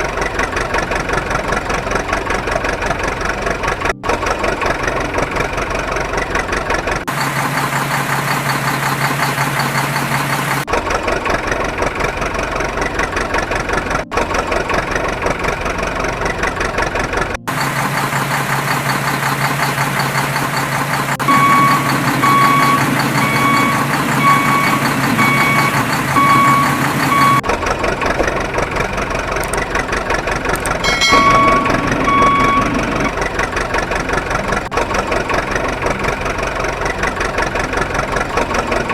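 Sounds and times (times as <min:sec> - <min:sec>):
diesel machinery running: 0:00.0 - 0:38.9
backup alarm beeping: 0:19.6 - 0:27.5, 0:30.8 - 0:33.2.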